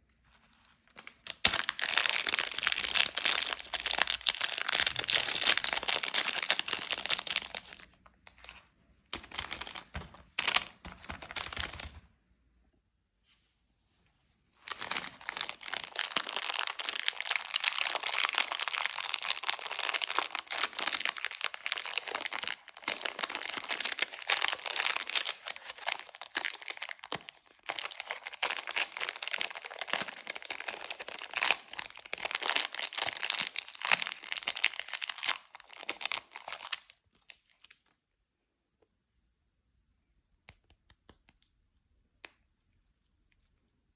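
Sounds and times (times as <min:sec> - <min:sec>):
candy wrappers crinkling: 0:00.9 - 0:12.0, 0:14.6 - 0:37.9.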